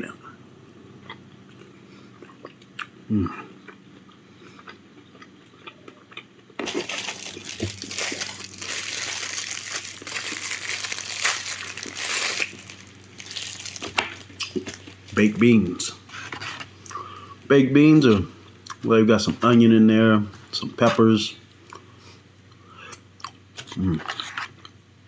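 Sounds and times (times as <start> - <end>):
food packaging crinkling: 6.6 - 16.8.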